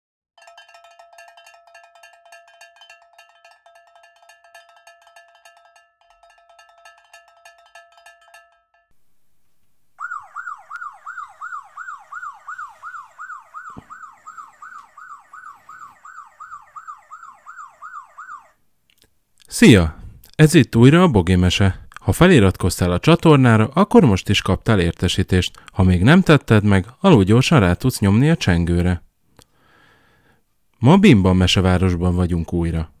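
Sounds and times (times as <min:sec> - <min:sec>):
ringing bell-like dings: 0:00.4 - 0:08.9
electronic yelp siren: 0:10.0 - 0:18.6.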